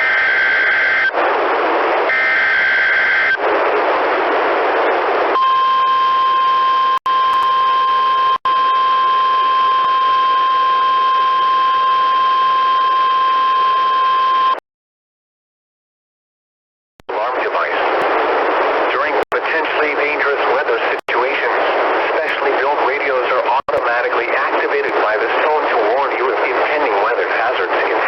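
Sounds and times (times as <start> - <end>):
steady warning alarm tone: 0.0 - 1.1, 2.1 - 3.4
radio hiss: 0.0 - 5.4, 17.1 - 28.0
buzzy two-tone data squawk: 2.1 - 3.4.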